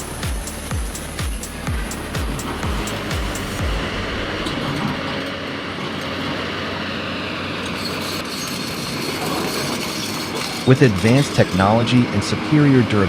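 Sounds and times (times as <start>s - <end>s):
thumping music beat: 0.0s - 5.3s
heavy machinery running: 0.0s - 9.1s.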